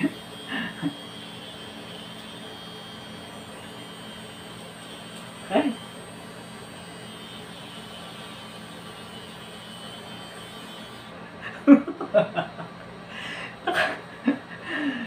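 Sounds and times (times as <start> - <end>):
person chuckling: 0.0 - 1.1, 11.4 - 15.0
nose hair trimmer buzzing: 0.0 - 11.2.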